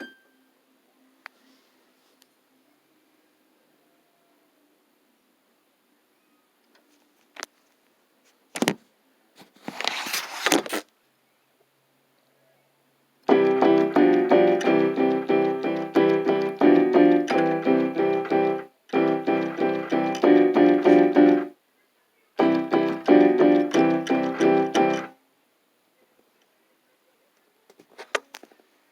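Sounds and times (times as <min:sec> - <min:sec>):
electronic keyboard fast runs: 0:13.3 - 0:21.5, 0:22.4 - 0:25.1.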